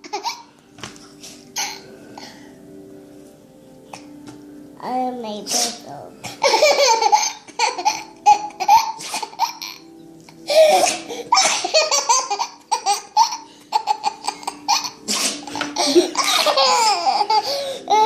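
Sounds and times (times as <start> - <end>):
child giggling: 6.4 - 9.8, 10.6 - 18.0.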